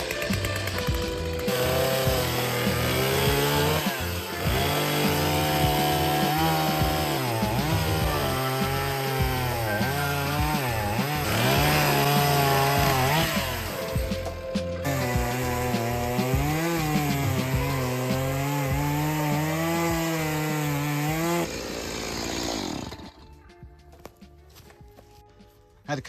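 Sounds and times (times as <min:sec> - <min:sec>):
chainsaw cutting logs: 0:00.0 - 0:23.4.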